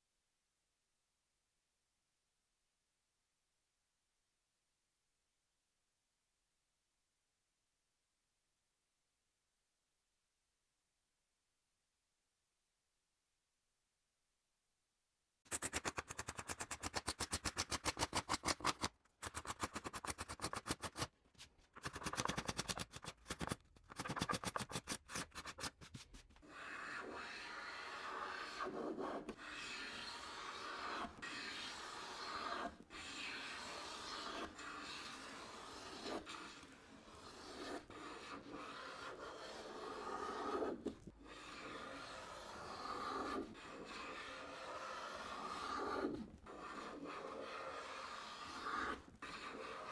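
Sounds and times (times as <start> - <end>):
hand plane shaving wood: 26.4 - 49.9.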